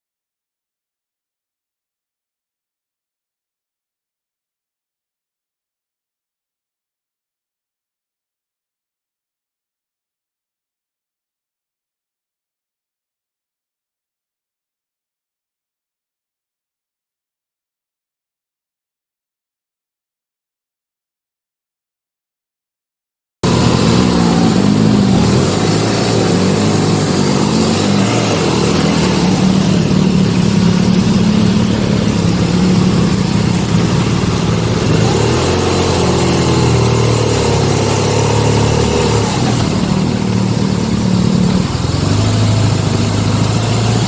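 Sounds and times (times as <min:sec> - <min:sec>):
motorcycle engine revving: 0:23.4 - 0:44.0.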